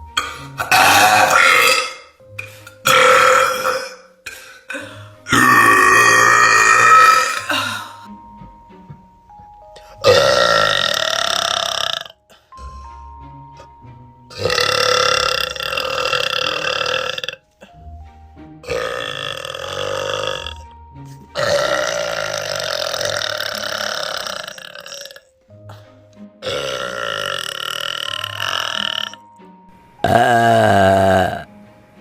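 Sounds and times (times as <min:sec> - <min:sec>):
faint background music: 0:00.0 - 0:32.0
women burping: 0:00.2 - 0:02.2, 0:02.8 - 0:08.0, 0:10.0 - 0:12.2, 0:14.3 - 0:17.4, 0:18.7 - 0:20.6, 0:21.4 - 0:25.3, 0:26.4 - 0:29.2, 0:30.0 - 0:31.5.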